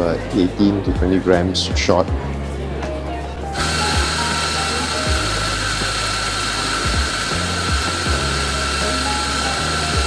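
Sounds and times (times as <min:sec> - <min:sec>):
coffee grinder motor whining: 0:03.5 - 0:10.0.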